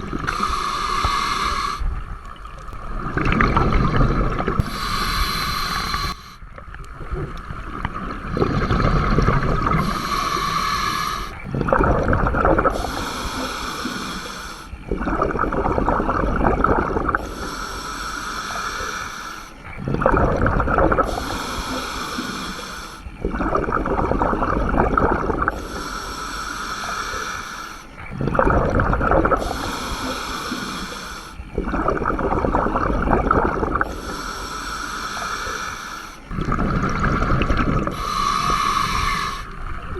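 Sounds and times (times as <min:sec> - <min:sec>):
exhaled bubbles rushing: 0:00.0 - 0:17.6, 0:19.6 - 0:22.4, 0:23.0 - 0:26.2, 0:27.9 - 0:34.3, 0:36.2 - 0:39.9
hissing regulator inhale: 0:00.1 - 0:02.0, 0:03.6 - 0:06.4, 0:08.4 - 0:11.5, 0:12.6 - 0:14.9, 0:16.2 - 0:19.8, 0:21.0 - 0:23.1, 0:25.0 - 0:28.2, 0:28.9 - 0:31.6, 0:32.5 - 0:39.8.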